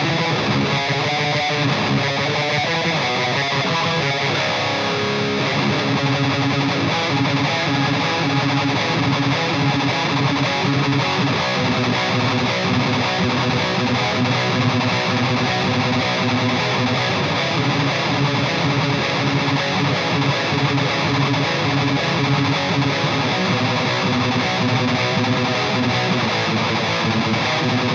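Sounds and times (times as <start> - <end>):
distorted electric guitar: 0.0 - 27.9.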